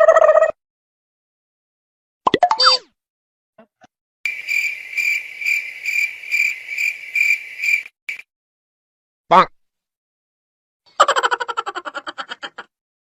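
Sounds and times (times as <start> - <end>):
cartoon sliding pitch effect: 2.3 - 2.9
cricket chirping: 4.3 - 8.2.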